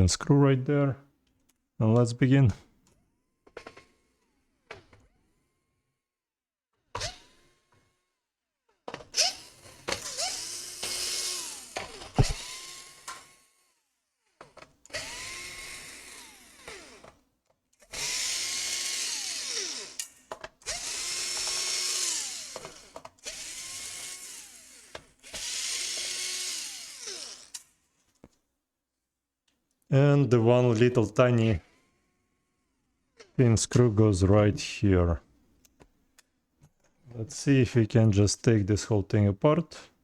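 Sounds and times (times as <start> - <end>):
electric screwdriver motor whine: 9.1 - 13.8, 14.9 - 17.2, 17.8 - 27.8.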